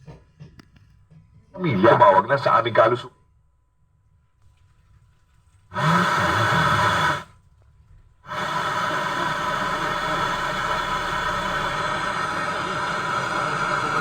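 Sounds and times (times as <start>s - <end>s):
radio static hiss: 1.6s - 3.1s, 8.3s - 12.6s.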